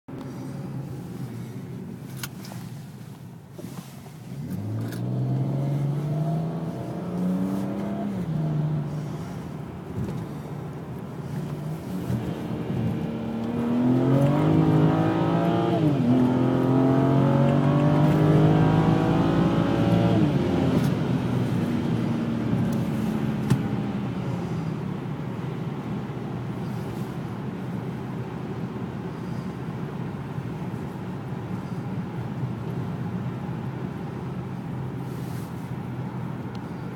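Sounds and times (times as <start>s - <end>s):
car engine revving under throttle: 4.4s - 10.4s, 11.3s - 25.9s.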